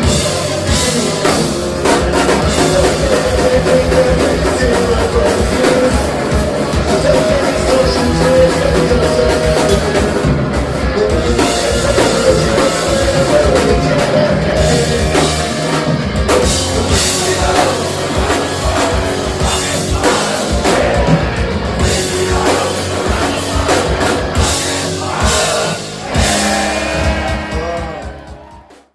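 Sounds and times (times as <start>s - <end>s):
drum and cymbal hits: 0.0s - 28.9s
punk rock band playing live: 0.0s - 28.9s.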